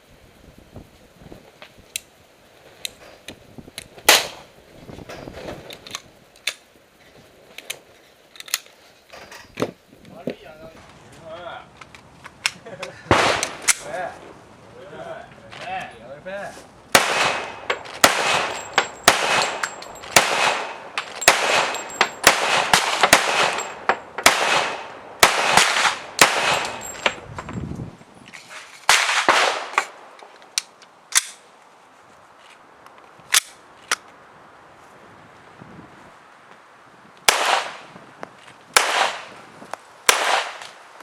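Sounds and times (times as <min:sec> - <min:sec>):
pistol shots with echo: 0:13.1 - 0:13.8, 0:16.9 - 0:27.1, 0:28.9 - 0:29.9, 0:37.3 - 0:37.9, 0:38.8 - 0:39.3, 0:40.1 - 0:40.7.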